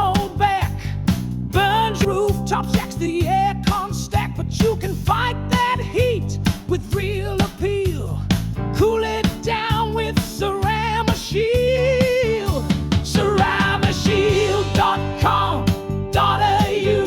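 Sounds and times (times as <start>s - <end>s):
bass line: 0.0s - 17.0s
guitar: 8.6s - 17.0s
person singing with vibrato: 8.8s - 17.0s.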